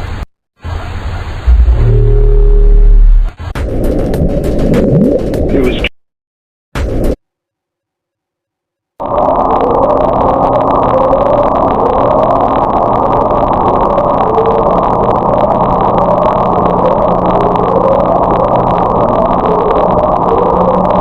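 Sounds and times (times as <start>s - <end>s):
loud steady rumbling: 0.0s - 4.8s, 9.0s - 21.0s
short rising tone: 1.4s - 3.4s.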